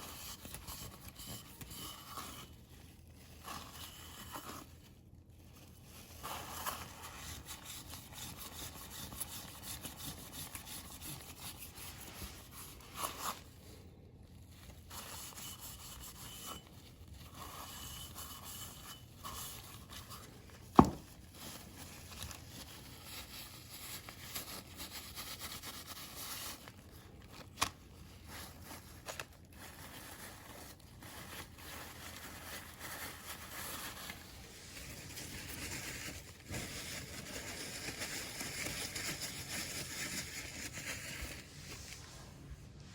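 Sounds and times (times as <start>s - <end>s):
rubbing and scraping small parts: 14.5s - 42.0s.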